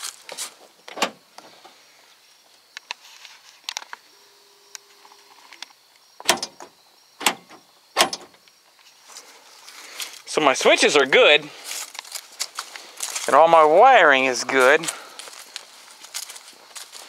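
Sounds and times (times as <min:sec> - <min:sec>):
faint hum: 0:03.9 - 0:05.7
door lock switch clicks: 0:06.2 - 0:06.6
door lock mechanism clunks: 0:06.2 - 0:08.4.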